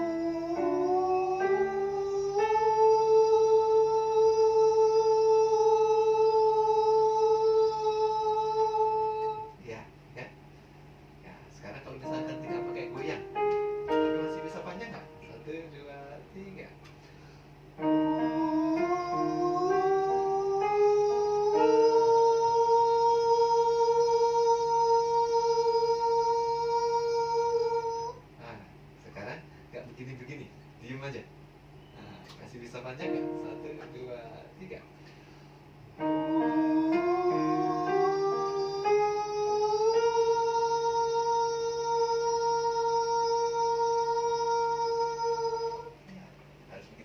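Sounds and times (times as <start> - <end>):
sustained accompaniment chords: 0.0 - 7.6, 12.0 - 16.7, 17.7 - 26.9, 33.0 - 45.8
person singing sustained note: 0.0 - 9.5, 12.0 - 15.9, 17.8 - 28.2, 33.1 - 34.5, 36.0 - 46.0.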